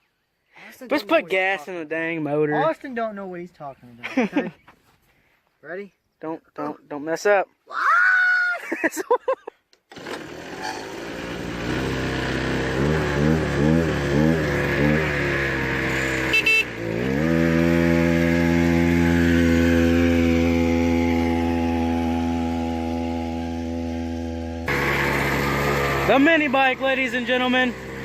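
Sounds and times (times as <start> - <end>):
small engine revving: 9.9 - 28.0
short horn beep: 16.0 - 16.8.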